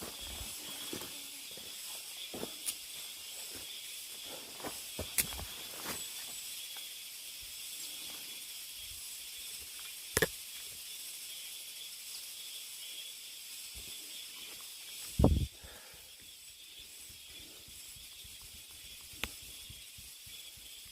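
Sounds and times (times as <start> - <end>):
footsteps on forest floor: 0.0 - 6.4
cicadas buzzing: 0.0 - 20.9.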